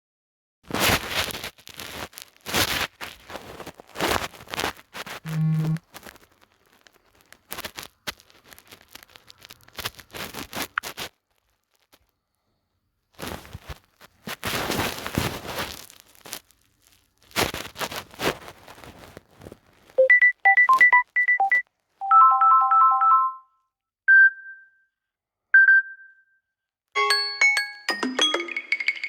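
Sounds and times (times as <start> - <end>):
rustling scraping noise: 0.7 - 12.0, 13.1 - 20.0.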